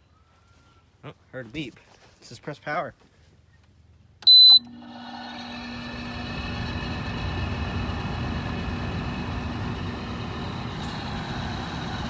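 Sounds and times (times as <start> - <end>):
short high beep: 4.3 - 4.7
fan motor spinning up and humming: 4.3 - 12.0.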